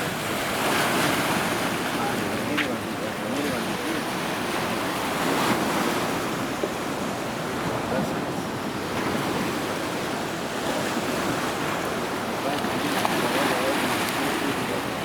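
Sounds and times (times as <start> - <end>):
sea waves washing on shore: 0.0 - 15.0.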